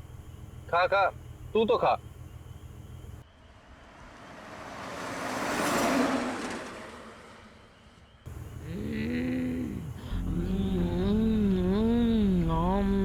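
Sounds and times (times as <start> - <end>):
vehicle passing by: 3.6 - 8.0
low car interior rumble: 8.3 - 13.0.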